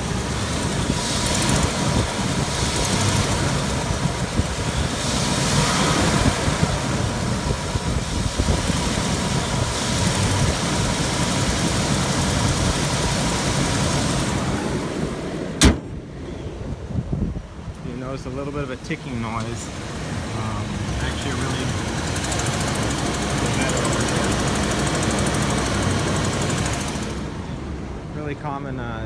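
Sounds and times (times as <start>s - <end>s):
exhaust leak ticking: 0.0s - 15.0s, 17.6s - 27.8s
car engine running: 0.0s - 16.7s, 17.5s - 28.8s
sharp knock: 15.6s - 16.0s.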